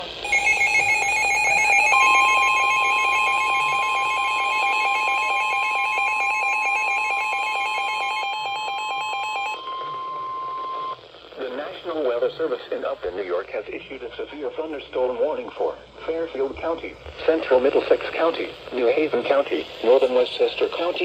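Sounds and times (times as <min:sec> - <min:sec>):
alternating two-pitch alarm: 0:00.2 - 0:11.0
steady warning tone: 0:00.2 - 0:11.0.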